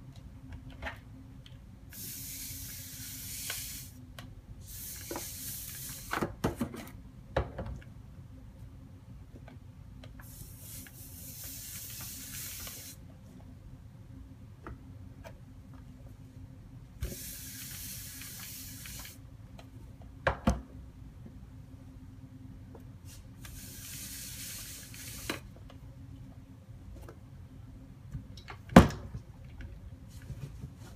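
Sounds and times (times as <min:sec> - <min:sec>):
steam iron hissing: 0:02.0 - 0:04.0, 0:10.3 - 0:13.0, 0:17.0 - 0:19.2.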